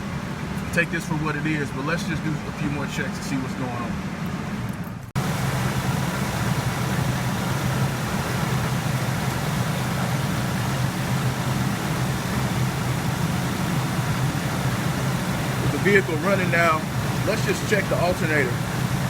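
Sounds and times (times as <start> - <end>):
pickup engine idling: 5.2 - 19.0.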